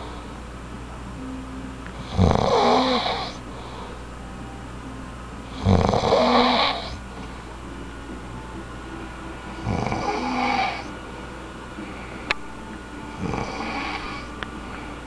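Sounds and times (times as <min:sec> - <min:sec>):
person snoring with low rattle: 0:02.0 - 0:03.9, 0:05.5 - 0:07.1, 0:09.6 - 0:11.0, 0:13.2 - 0:15.0.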